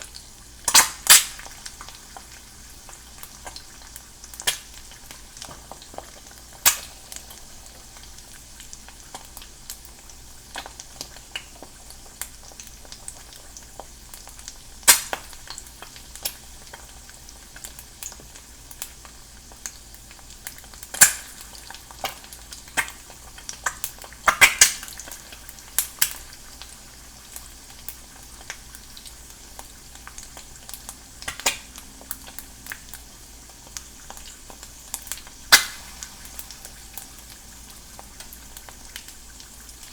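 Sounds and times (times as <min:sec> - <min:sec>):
egg sizzling in a pan: 0:00.0 - 0:39.9
spitting fat crackling and popping: 0:00.1 - 0:09.8, 0:14.8 - 0:16.4, 0:20.4 - 0:39.9.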